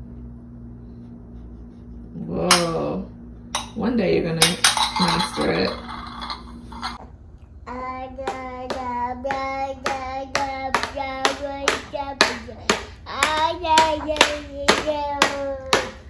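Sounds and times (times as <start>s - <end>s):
toddler singing: 7.7s - 16.0s
clapping a steady beat: 8.2s - 15.4s.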